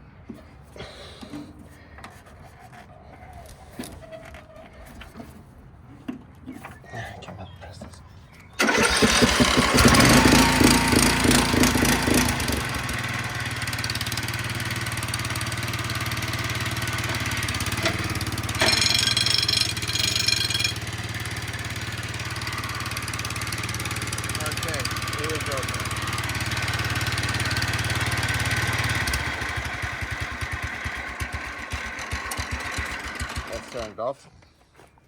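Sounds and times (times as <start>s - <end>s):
mower engine starting and idling: 8.4s - 34.0s.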